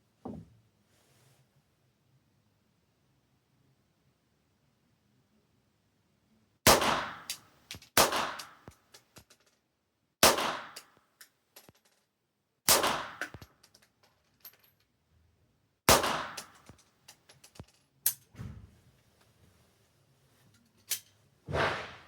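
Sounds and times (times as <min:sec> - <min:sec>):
pistol shots with echo: 0:06.7 - 0:07.4, 0:08.0 - 0:08.7, 0:10.2 - 0:10.8, 0:12.7 - 0:13.4, 0:15.9 - 0:16.7.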